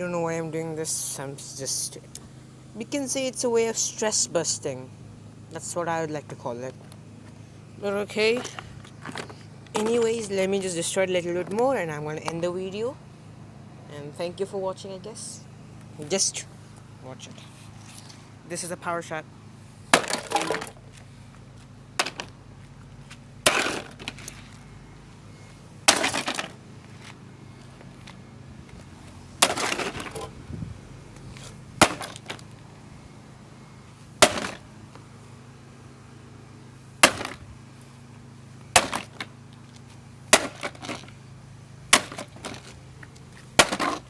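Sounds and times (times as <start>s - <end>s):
hammer smashing coffee machine: 20.0s - 20.7s, 23.5s - 24.1s, 25.9s - 26.5s, 29.4s - 30.3s, 31.8s - 32.4s, 34.2s - 34.6s, 37.0s - 37.4s, 38.8s - 39.2s, 40.4s - 41.0s, 41.9s - 42.7s, 43.6s - 44.0s
breaking pieces rattling: 25.9s - 26.6s.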